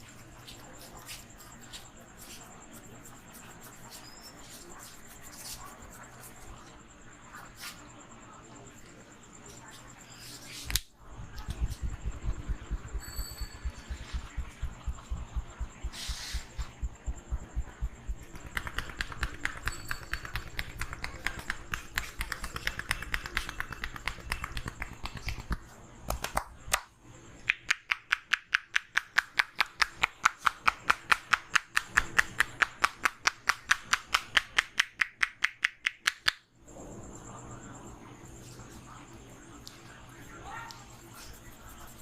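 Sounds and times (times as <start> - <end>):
deep thumping strokes: 11.2 - 18.4
hands slapping head and body: 13.6 - 26.9
sharp high claps: 17.6 - 26.9.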